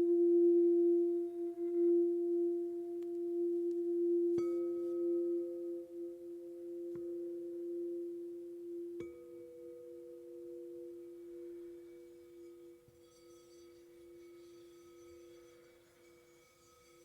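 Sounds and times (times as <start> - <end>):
singing bowls ringing: 0.0 - 8.0, 9.0 - 17.0
singing bowl struck: 9.0 - 17.0.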